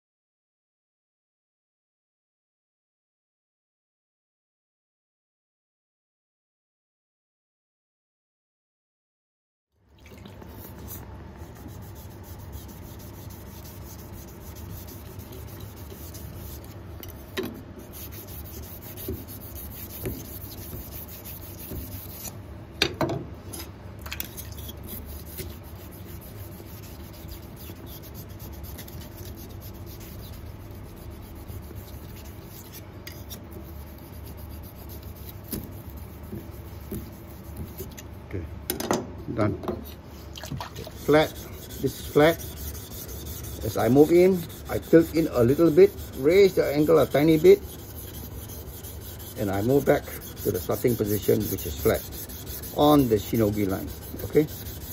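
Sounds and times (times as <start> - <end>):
knife blade rubbing on whetstone: 10.6 - 22.4, 24.3 - 38.1, 40.8 - 54.9.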